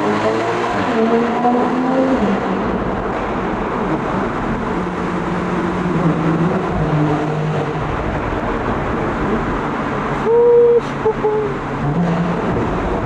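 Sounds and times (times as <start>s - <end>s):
road and tyre noise: 0.0s - 13.0s
car engine running: 2.6s - 10.3s.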